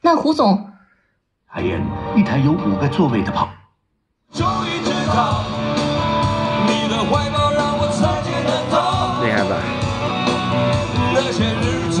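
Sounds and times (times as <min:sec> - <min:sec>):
song playing through radio speaker: 0:04.3 - 0:12.0.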